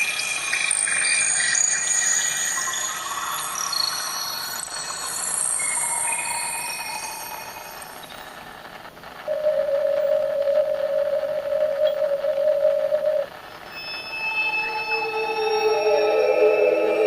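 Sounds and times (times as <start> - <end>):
faint hiss: 0.0 - 17.0
other tones: 9.3 - 17.0
steady tone: 9.3 - 17.0.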